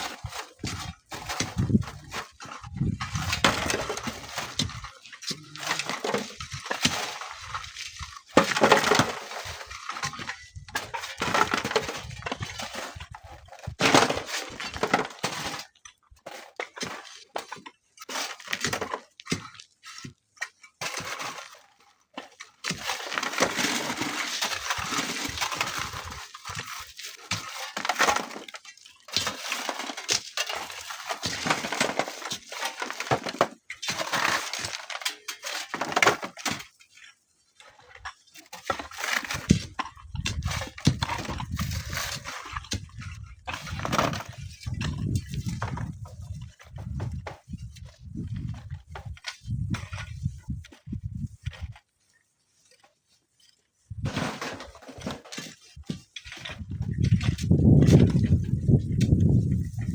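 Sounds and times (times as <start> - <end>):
sand and stones sliding: 22.7 - 37.3, 38.3 - 59.9.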